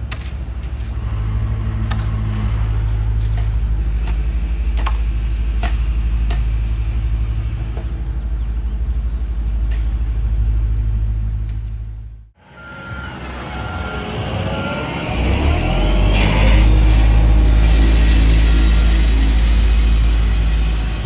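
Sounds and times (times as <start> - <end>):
diesel engine rumbling: 0.0 - 21.0
sharp clicks and knocks: 1.8 - 2.5.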